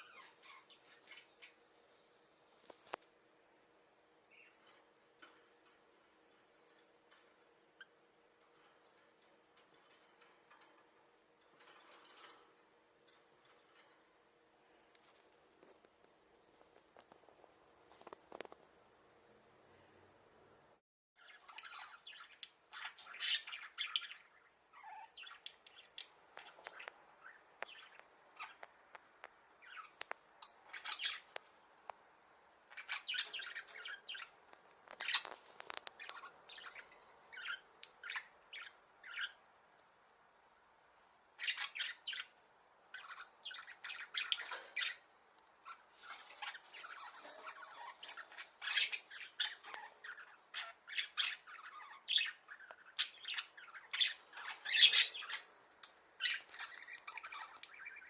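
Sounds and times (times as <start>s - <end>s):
budgerigars chirping and squawking: 0.0s - 1.6s, 4.3s - 5.4s, 21.2s - 31.5s, 32.6s - 39.5s, 41.3s - 58.0s.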